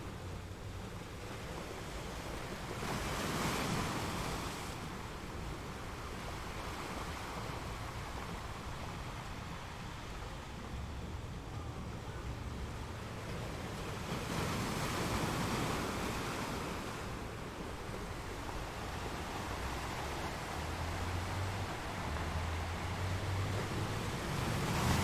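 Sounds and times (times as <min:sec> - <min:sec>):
sea waves washing in: 0:00.0 - 0:25.0.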